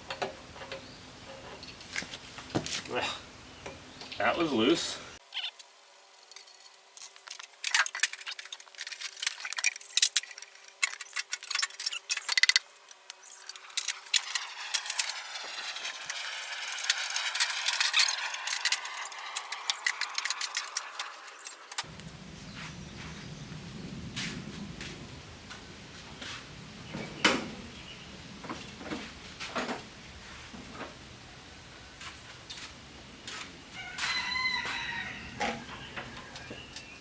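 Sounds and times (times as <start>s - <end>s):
metal parts clanking: 6.3s - 21.8s
hissing sweep: 12.8s - 25.2s
low rumble: 21.9s - 27.0s.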